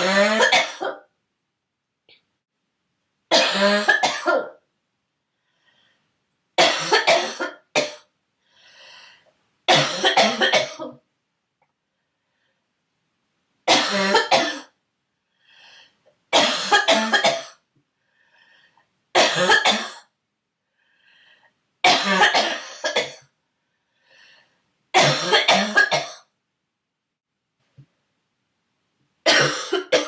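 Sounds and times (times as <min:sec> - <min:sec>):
girl coughing: 0:03.3 - 0:04.6, 0:06.6 - 0:08.1, 0:09.7 - 0:11.0, 0:13.7 - 0:14.7, 0:16.4 - 0:17.6, 0:19.2 - 0:20.1, 0:21.9 - 0:23.2, 0:25.0 - 0:26.3, 0:29.3 - 0:30.0
faint in-breaths: 0:05.2 - 0:06.2, 0:08.4 - 0:09.4, 0:11.8 - 0:12.8, 0:15.2 - 0:16.2, 0:17.9 - 0:19.0, 0:20.6 - 0:21.7, 0:23.5 - 0:24.8.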